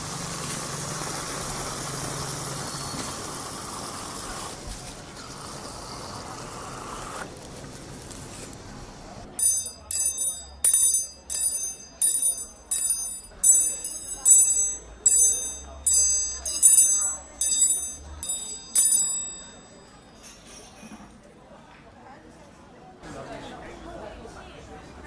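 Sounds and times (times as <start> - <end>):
steady background noise: 0.0 - 20.6
sharp high ringing strokes: 9.4 - 20.2.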